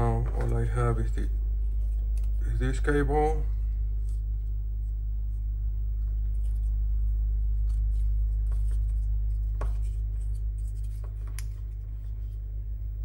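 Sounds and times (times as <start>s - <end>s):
steady low electrical hum: 0.0s - 13.0s.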